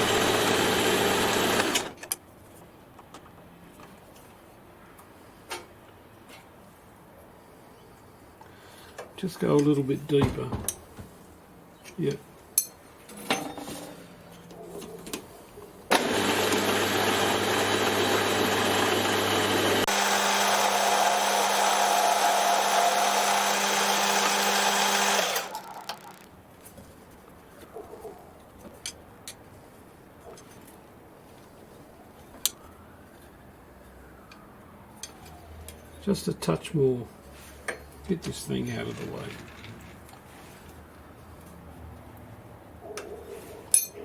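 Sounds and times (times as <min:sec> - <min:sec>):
metal lathe running: 0:00.0 - 0:01.9, 0:15.9 - 0:26.3.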